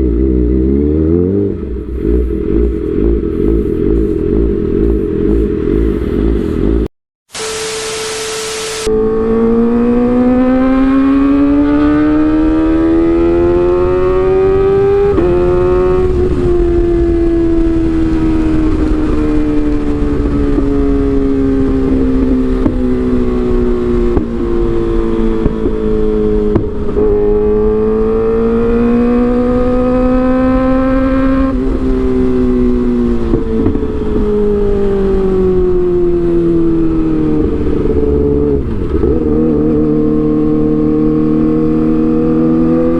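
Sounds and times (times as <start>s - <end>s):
motorcycle engine revving: 0.0s - 42.9s
brief rush of noise: 7.3s - 8.9s.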